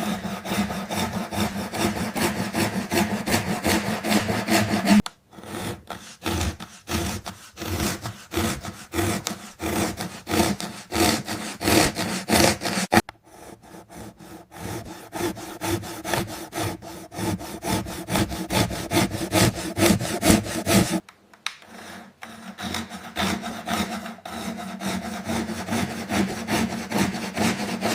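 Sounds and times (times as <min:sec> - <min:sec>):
hand saw cutting: 0:00.0 - 0:21.0, 0:21.6 - 0:27.9.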